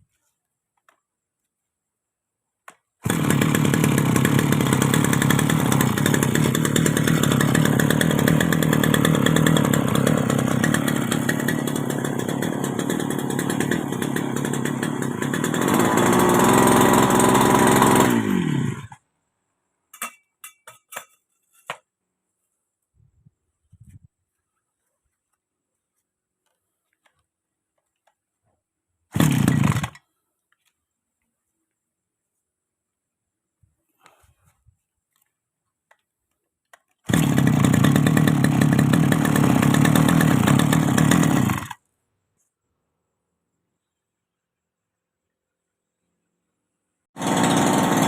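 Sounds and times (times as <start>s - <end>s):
brush cutter engine running: 3.0s - 19.0s, 29.1s - 30.0s, 37.1s - 41.8s, 47.2s - 48.0s.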